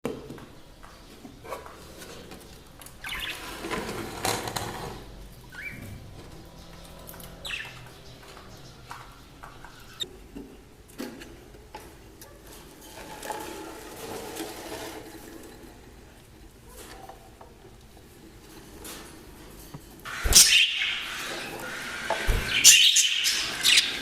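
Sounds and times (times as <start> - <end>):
birds fluttering: 1.8 - 10.1, 18.4 - 24.0.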